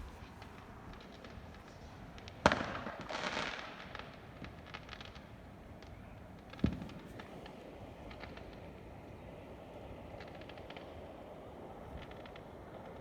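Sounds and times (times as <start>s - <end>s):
firework bangs: 0.0s - 0.4s
firework crackling: 0.0s - 3.6s.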